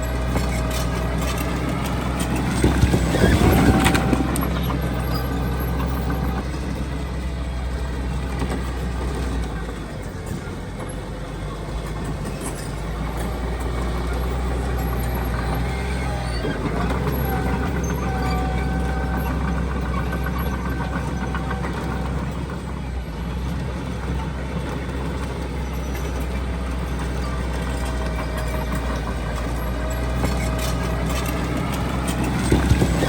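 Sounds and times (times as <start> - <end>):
diesel machinery engine rumble: 0.0 - 33.0.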